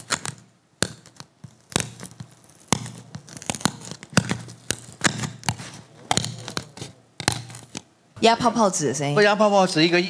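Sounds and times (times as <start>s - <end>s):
styrofoam snapping and crackling: 0.0s - 7.9s.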